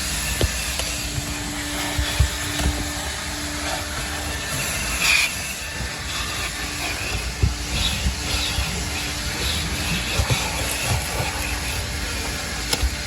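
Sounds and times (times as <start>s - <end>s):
vacuum suction hiss: 0.0s - 13.0s.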